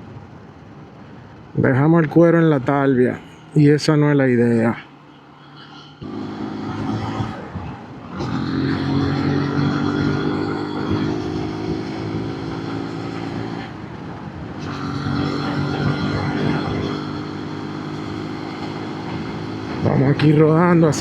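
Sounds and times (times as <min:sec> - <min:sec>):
motorcycle engine running: 0:06.0 - 0:21.0.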